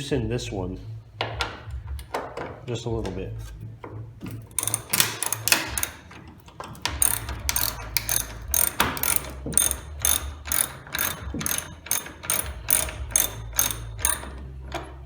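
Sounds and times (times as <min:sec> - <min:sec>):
ratchet wrench clicking: 0:04.3 - 0:15.0.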